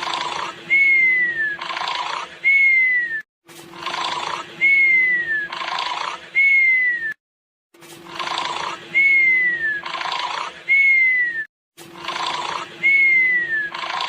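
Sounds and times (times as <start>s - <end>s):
cartoon snoring: 0.0s - 2.8s, 3.7s - 6.6s, 8.0s - 11.0s, 11.8s - 14.0s
falling whistle: 6.4s - 7.2s, 10.7s - 11.5s, 12.8s - 13.8s.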